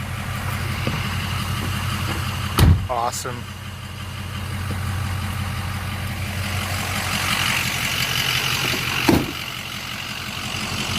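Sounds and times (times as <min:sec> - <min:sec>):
truck engine idling: 0:00.0 - 0:10.9
sharp thump: 0:02.1 - 0:02.9, 0:08.7 - 0:09.4.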